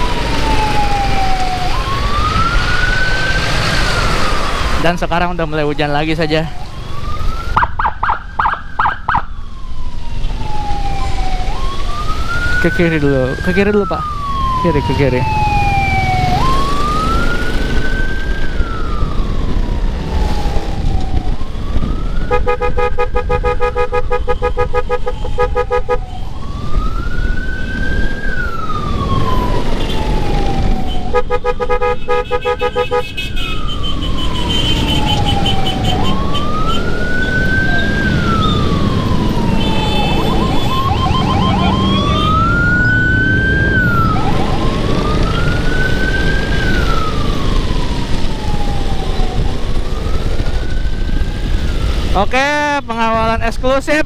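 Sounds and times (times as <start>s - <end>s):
emergency siren wailing: 0.0s - 54.0s
road and engine noise: 0.0s - 54.0s
horn blasts: 22.3s - 25.9s, 31.1s - 33.6s.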